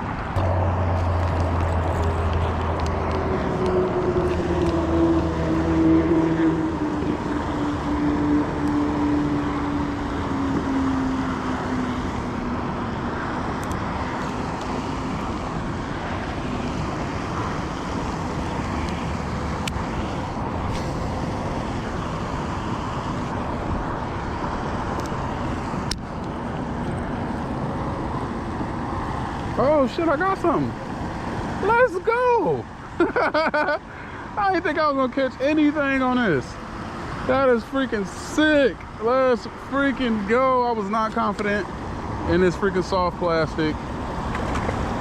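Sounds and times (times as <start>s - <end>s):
passing engine droning: 0.0s - 31.8s
traffic noise: 0.0s - 45.0s.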